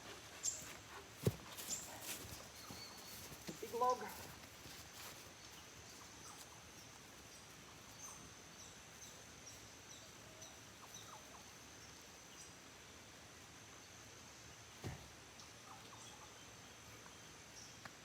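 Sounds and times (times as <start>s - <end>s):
faint bird chirps: 1.6s - 4.2s.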